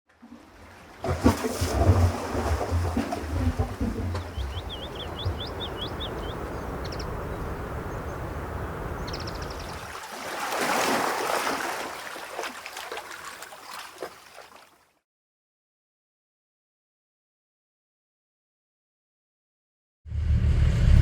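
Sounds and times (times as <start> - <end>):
rushing water with low rumble: 0.1 - 14.8.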